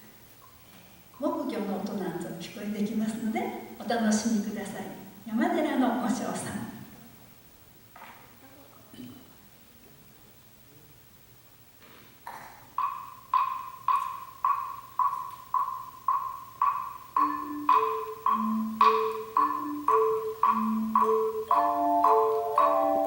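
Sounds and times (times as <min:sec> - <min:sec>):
wooden fish knocked steadily: 0:12.8 - 0:22.8
higher chime chords: 0:17.2 - 0:23.0.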